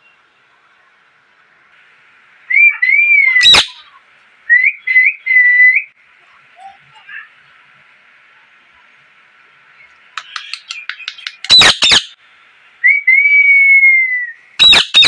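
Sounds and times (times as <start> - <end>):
parrot whistling: 2.5 - 3.8, 10.2 - 12.2, 14.6 - 15.0.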